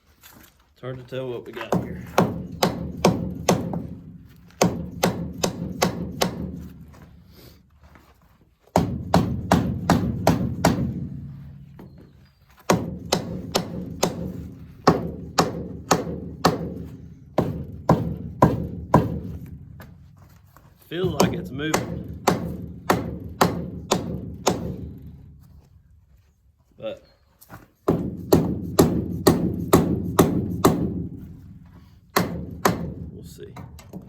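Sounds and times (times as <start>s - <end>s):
hammer striking metal: 1.7s - 4.0s, 4.6s - 6.7s, 8.8s - 11.8s, 12.7s - 19.9s, 21.0s - 25.2s, 27.9s - 31.2s, 32.1s - 33.2s.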